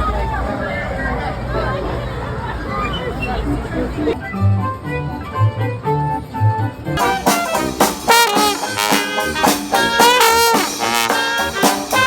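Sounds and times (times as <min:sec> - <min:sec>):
jazzy brass music: 0:04.2 - 0:12.0.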